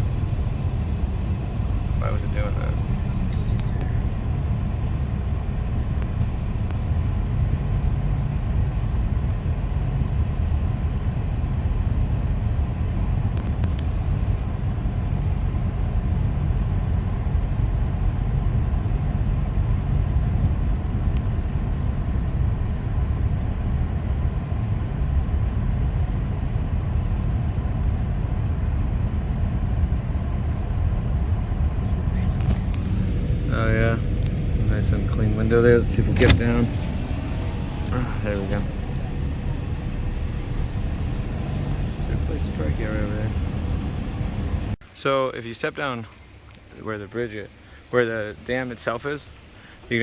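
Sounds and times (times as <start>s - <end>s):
car cabin road rumble: 0.0s - 14.0s, 32.2s - 44.8s, 45.8s - 50.0s.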